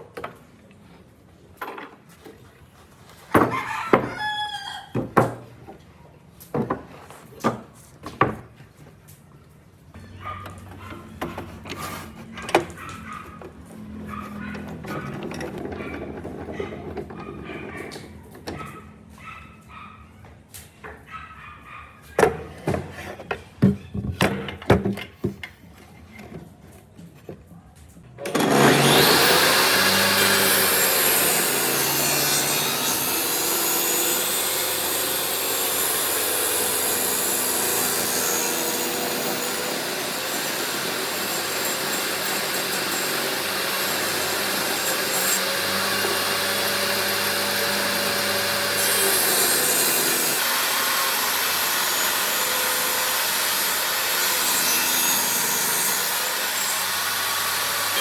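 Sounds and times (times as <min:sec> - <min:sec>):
power tool cutting wood: 0:28.2 - 0:58.0.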